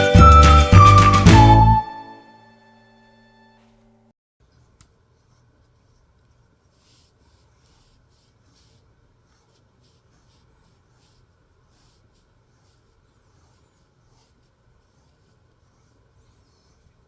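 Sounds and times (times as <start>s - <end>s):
faint scratching and rustling: 4.4s - 17.0s.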